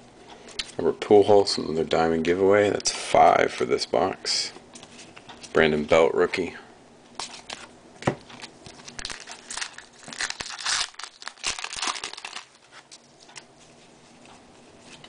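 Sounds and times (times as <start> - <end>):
foil wrapper crinkling: 8.3 - 13.4.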